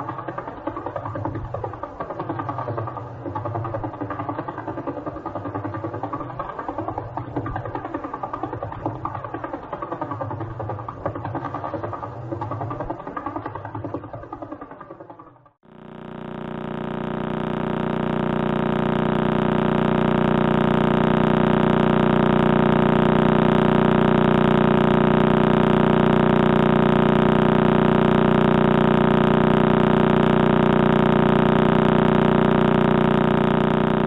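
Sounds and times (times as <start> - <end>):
steady even buzz: 15.7 - 34.0.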